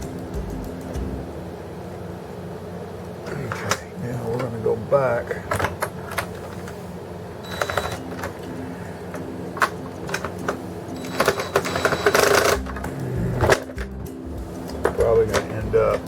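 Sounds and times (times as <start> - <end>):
screwdriver clicking and whirring: 7.5 - 8.4, 9.6 - 13.8.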